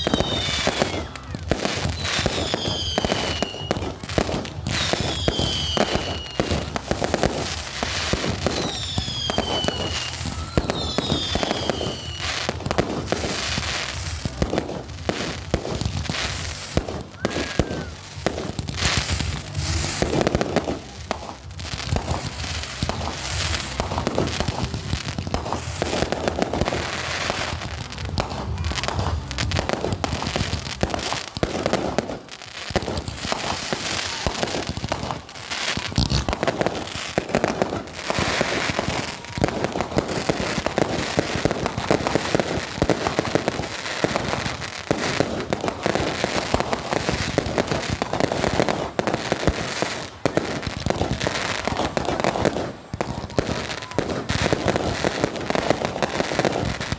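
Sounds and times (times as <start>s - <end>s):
fireworks bangs and crackling: 0.0s - 56.9s.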